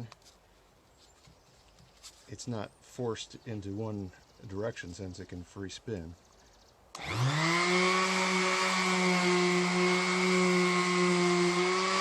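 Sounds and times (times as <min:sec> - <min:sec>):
electric sander whining: 0:07.0 - 0:12.0.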